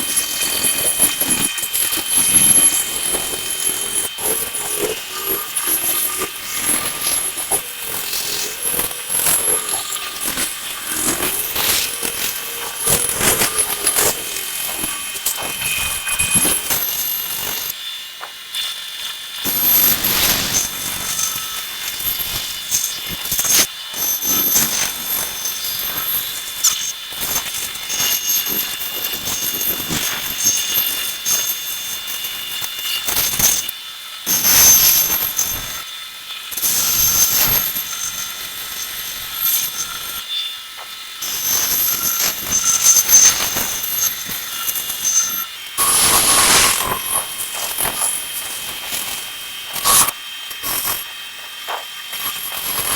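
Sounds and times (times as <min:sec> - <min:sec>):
bandsaw whining: 0:00.0 - 0:17.8, 0:41.2 - 0:52.9
saw blade cutting wood: 0:00.0 - 0:17.8, 0:41.2 - 0:52.9.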